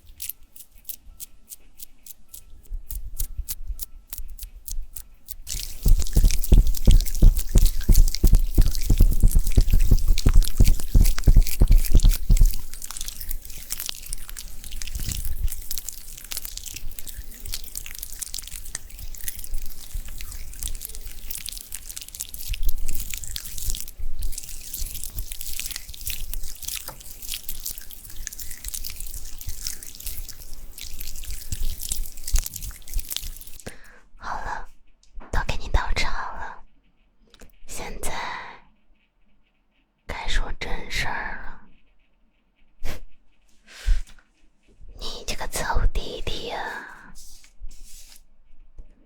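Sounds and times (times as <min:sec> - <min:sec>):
wet sticky crackling: 0:00.0 - 0:33.7.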